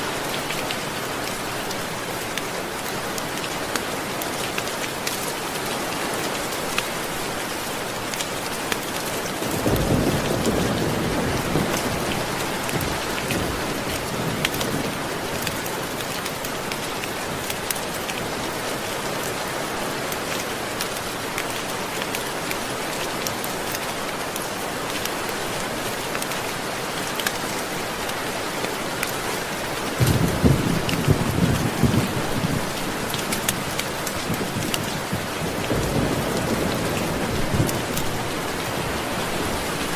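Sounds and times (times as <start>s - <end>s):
steady rain: 0.0s - 39.9s
sharp raindrop ticks: 20.1s - 25.3s, 27.0s - 29.2s, 33.1s - 38.1s.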